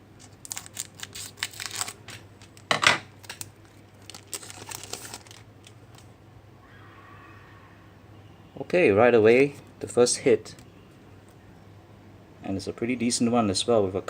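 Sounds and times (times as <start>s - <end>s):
wrapper tearing and crinkling: 0.2s - 6.1s.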